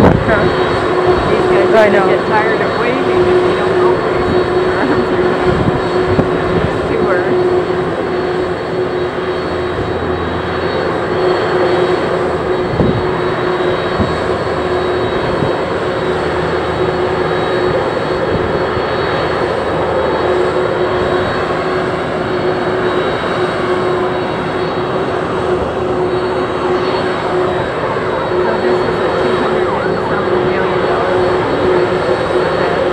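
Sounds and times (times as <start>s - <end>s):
jet airliner whine: 0.0s - 32.9s
wind rumble on microphone: 0.0s - 32.9s.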